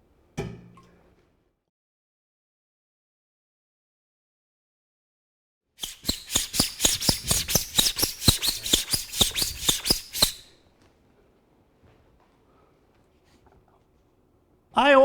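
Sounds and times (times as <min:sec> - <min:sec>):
knife stropping on canvas: 0:05.8 - 0:10.5.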